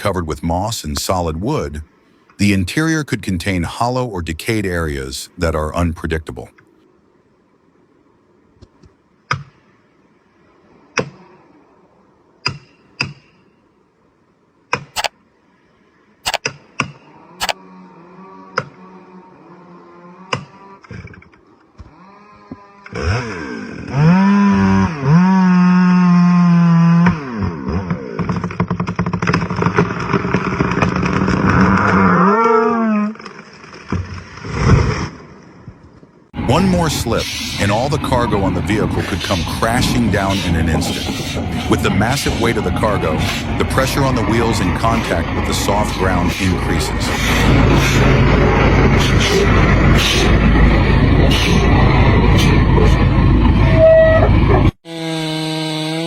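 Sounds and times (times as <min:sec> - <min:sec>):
chainsaw cutting wood: 0:21.8 - 0:32.0, 0:54.6 - 0:56.0
chainsaw idling: 0:36.4 - 0:53.6.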